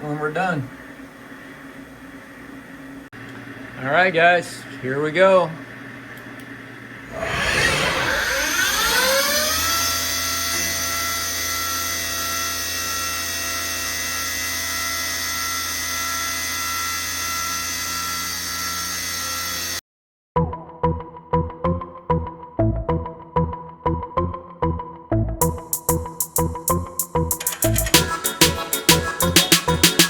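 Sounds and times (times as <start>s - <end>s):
mill spindle whine: 7.1s - 11.5s
music: 20.4s - 30.0s.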